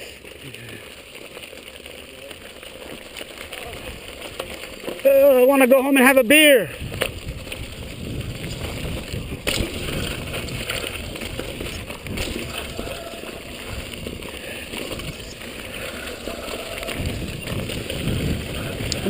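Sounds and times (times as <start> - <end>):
bike rattling: 0.0 - 19.0
bike tyres on dirt trail: 0.0 - 19.0
wind on microphone: 6.7 - 19.0.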